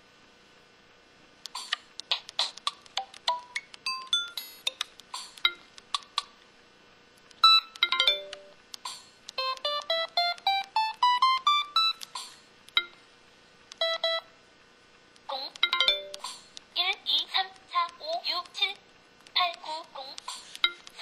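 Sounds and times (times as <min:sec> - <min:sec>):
phone electronic beeps and chimes: 0:07.4 - 0:08.6, 0:09.4 - 0:12.1, 0:13.8 - 0:14.3, 0:15.6 - 0:16.3.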